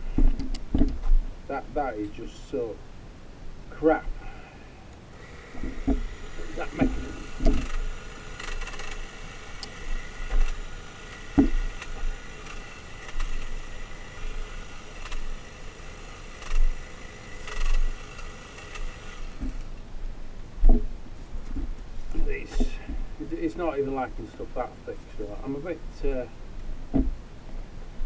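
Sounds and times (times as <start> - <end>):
hedge trimmer motor whine: 5.0 - 19.9
knocks: 26.9 - 27.2.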